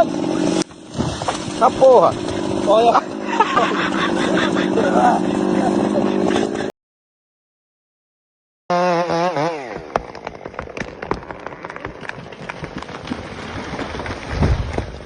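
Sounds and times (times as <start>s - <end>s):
chainsaw engine: 0.0s - 6.7s, 8.7s - 15.0s
wood cracking and snapping: 0.6s - 2.5s, 9.7s - 15.0s.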